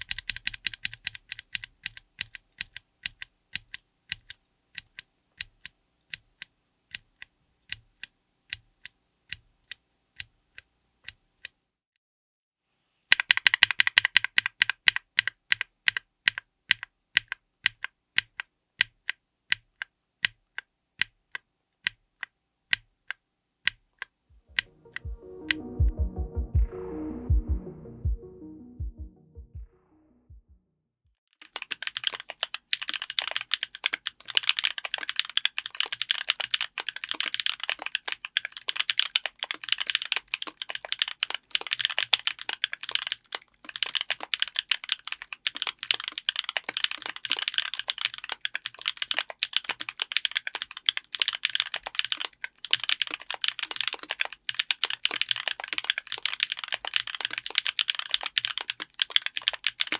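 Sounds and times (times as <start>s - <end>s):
fast typing on mechanical keyboard: 0.0s - 10.6s, 13.1s - 21.2s, 31.4s - 59.9s.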